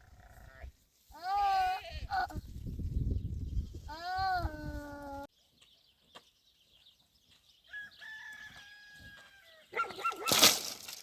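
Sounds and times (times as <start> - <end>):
rooster crowing: 7.7 - 9.7.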